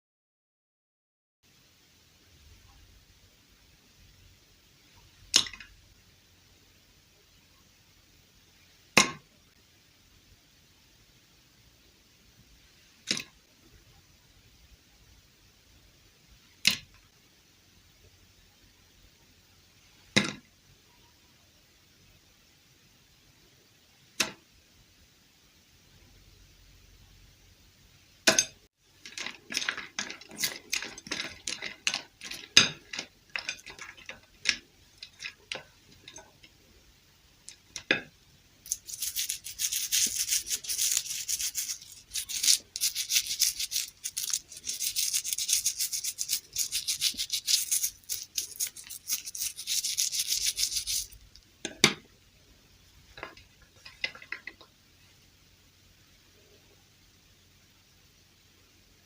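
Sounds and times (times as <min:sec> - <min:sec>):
fast scratchy rubbing: 0:38.7 - 0:51.2.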